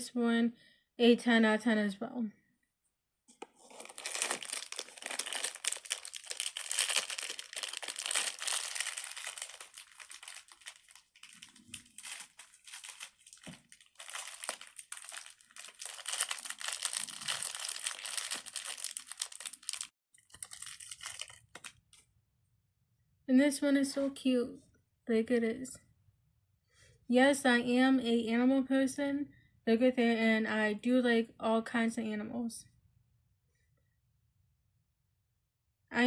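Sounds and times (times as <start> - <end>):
plastic packaging crinkling: 3.4 - 22.0.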